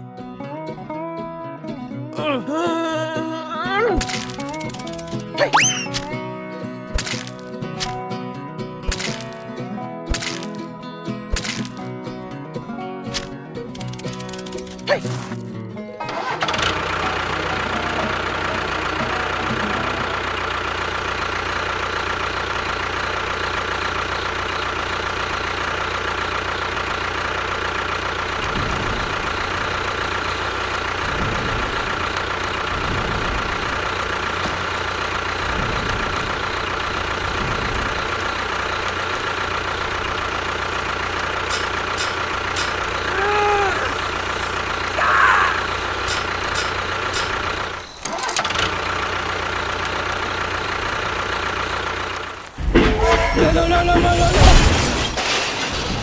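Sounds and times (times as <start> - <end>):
small motor whining: 4.0 - 6.2.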